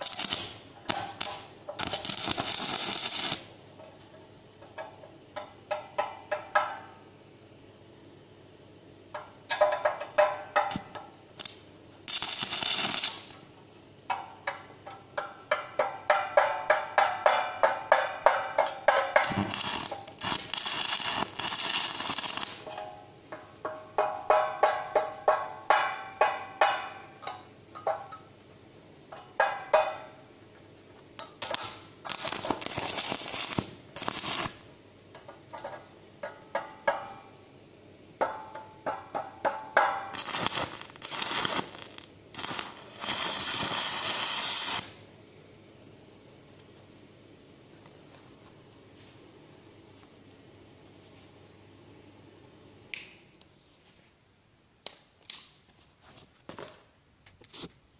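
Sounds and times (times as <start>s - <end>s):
welding arc crackling: 0.0s - 3.6s, 10.6s - 13.5s, 18.9s - 23.1s, 31.2s - 37.2s, 39.5s - 45.0s
hammer striking metal: 15.2s - 19.5s, 23.7s - 28.2s, 38.2s - 40.1s.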